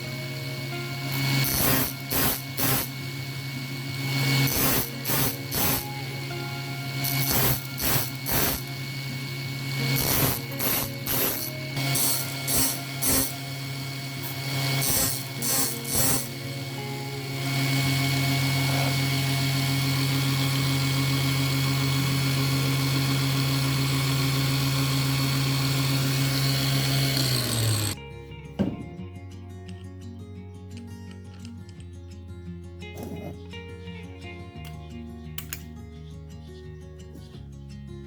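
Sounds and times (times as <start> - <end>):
power tool motor humming: 0.0 - 28.0.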